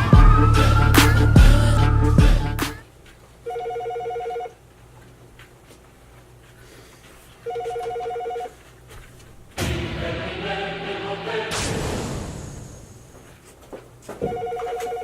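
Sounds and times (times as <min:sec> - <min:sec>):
music: 0:00.0 - 0:02.8, 0:09.6 - 0:12.2
telephone ringing: 0:03.4 - 0:04.6, 0:07.4 - 0:08.6, 0:14.2 - 0:15.0.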